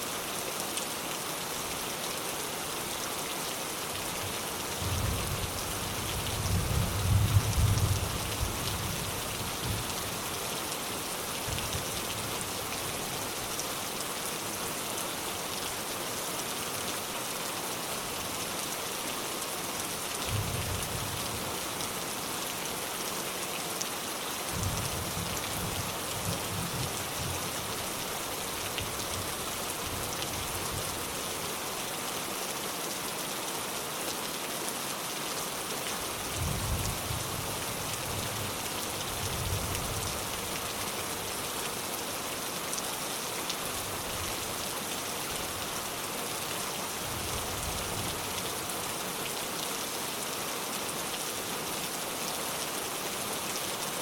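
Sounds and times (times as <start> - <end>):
steady rain hiss: 0.0 - 54.0.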